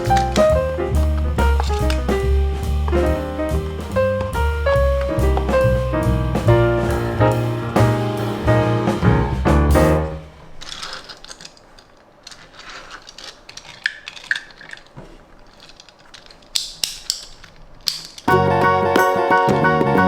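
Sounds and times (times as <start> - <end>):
background music: 0.0 - 10.3, 18.3 - 20.0
packaging rustling: 10.4 - 18.3.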